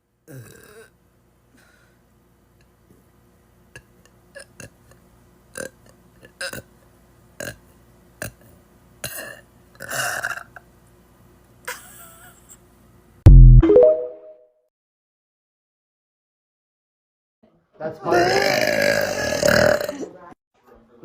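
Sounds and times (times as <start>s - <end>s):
woman burping: 18.1s - 20.1s.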